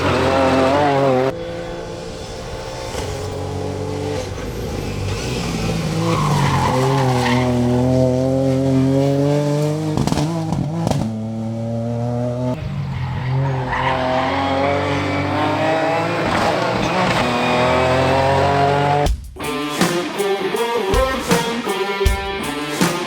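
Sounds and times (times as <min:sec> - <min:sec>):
car engine accelerating hard: 0:00.0 - 0:19.1
tyres squealing: 0:02.8 - 0:09.0.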